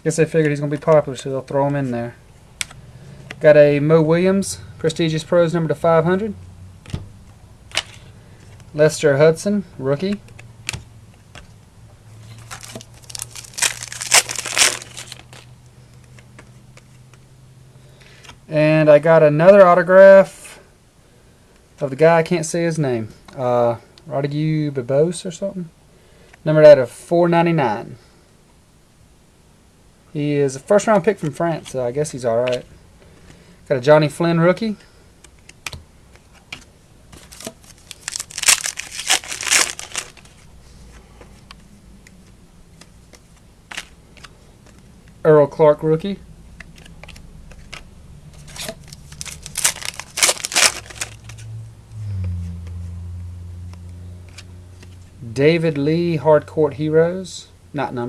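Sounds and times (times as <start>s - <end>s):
faint steady hum: 0.0s - 58.0s
card wrapper crinkling: 12.2s - 16.4s, 37.1s - 40.5s, 42.8s - 44.8s, 46.6s - 51.5s.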